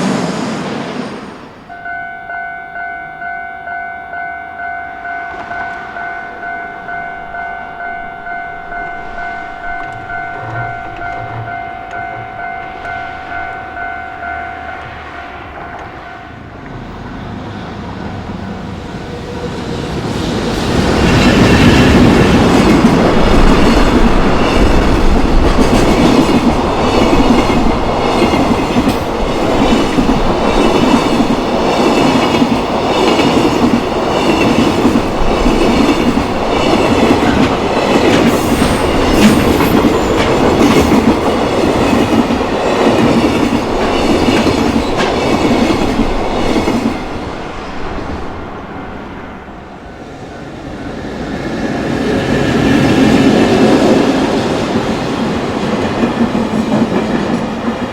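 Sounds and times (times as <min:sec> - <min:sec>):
train wheels clattering over rail joints: 0:20.5 - 0:47.1.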